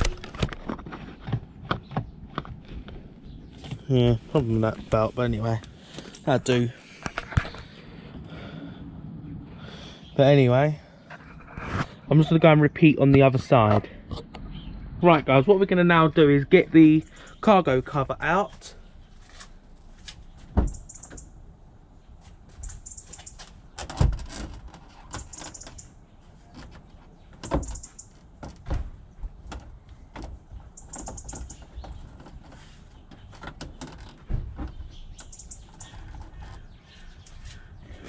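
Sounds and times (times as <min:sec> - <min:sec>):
faint bird chirps: 0:20.2 - 0:21.3, 0:22.0 - 0:23.4, 0:34.6 - 0:38.0.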